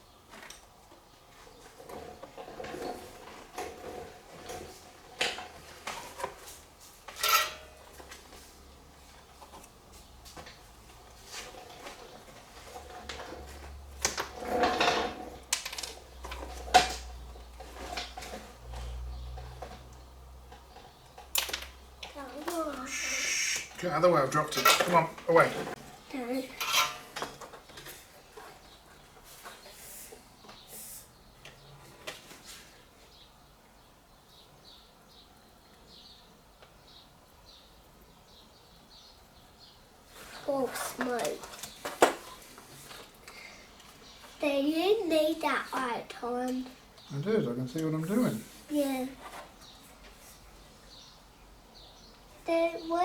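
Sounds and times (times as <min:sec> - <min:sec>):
bird chirping: 0:22.3 - 0:25.2, 0:33.0 - 0:39.9
scraping rustle: 0:40.0 - 0:43.3.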